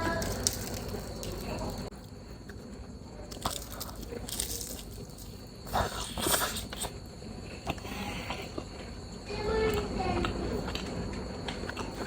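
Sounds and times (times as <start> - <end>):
chewing and crunching: 0.0 - 12.0.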